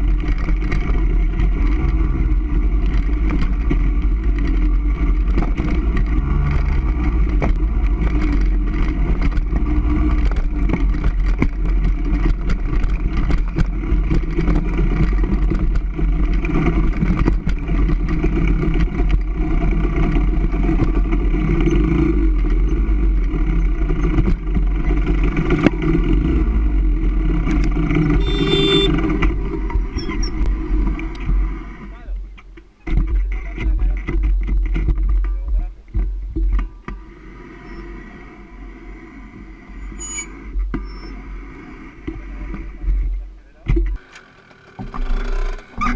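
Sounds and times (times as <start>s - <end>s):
knocks and clatter from rough ground: 0.0s - 37.1s, 40.2s - 41.2s, 41.8s - 45.9s
motorcycle engine running: 0.0s - 40.0s.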